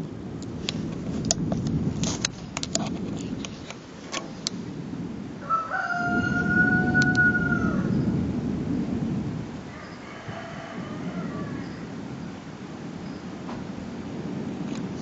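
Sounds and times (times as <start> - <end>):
low rumbling of volcano: 0.0 - 15.0
rooster crowing: 5.4 - 8.1, 9.6 - 12.0
sharp clicks: 7.0 - 7.3.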